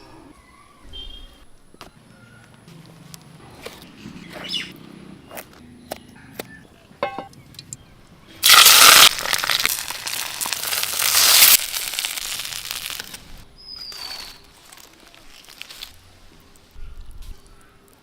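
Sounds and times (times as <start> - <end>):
fish thrashing and splashing: 8.4 - 13.1.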